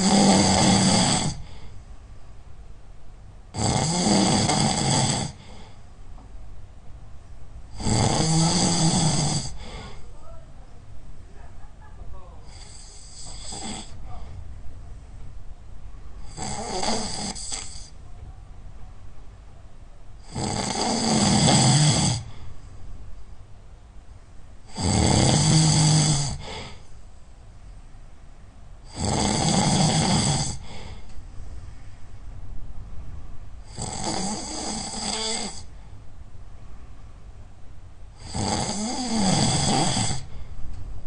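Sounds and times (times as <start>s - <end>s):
person snoring loudly: 0.0s - 1.5s, 3.6s - 5.6s, 7.8s - 9.9s, 12.4s - 14.0s, 16.3s - 18.0s, 20.2s - 22.3s, 24.7s - 26.8s, 28.9s - 30.8s, 33.7s - 35.7s, 38.2s - 40.3s.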